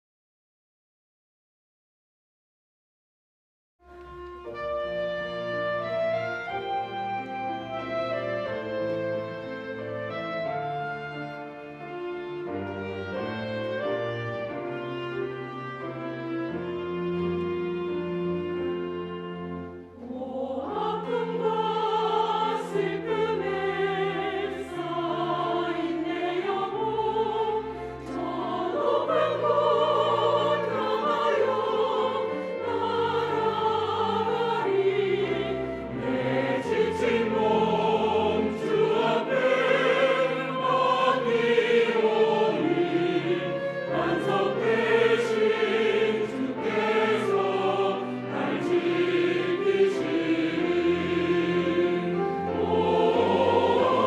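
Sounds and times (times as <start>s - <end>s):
church choir singing a hymn: 5.5s - 54.0s.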